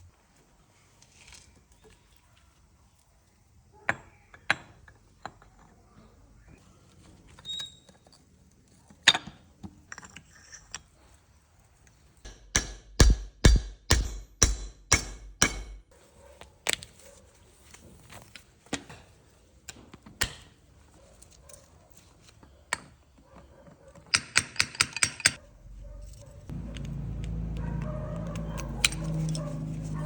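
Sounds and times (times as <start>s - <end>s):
sharp knocks on metal: 12.3s - 15.8s.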